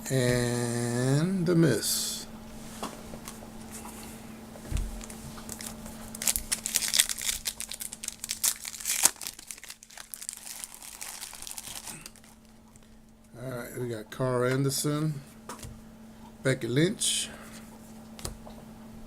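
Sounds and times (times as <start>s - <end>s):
wrapper crinkling and tearing: 4.9s - 12.6s.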